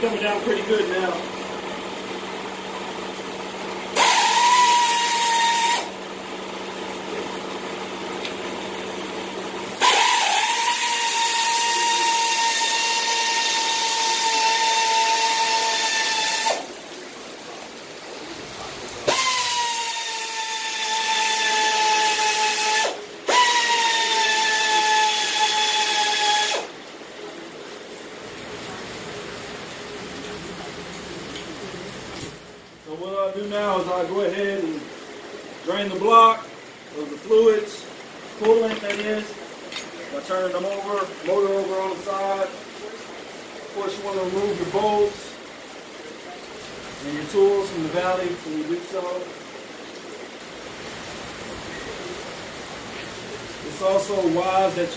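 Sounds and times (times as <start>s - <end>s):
handheld power tool whining: 4.0s - 5.9s, 9.8s - 16.6s, 19.1s - 26.7s.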